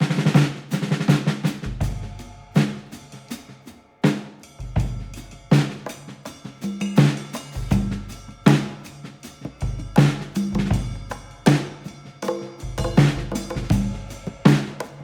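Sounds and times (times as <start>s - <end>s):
drum hits: 12.7s - 15.0s.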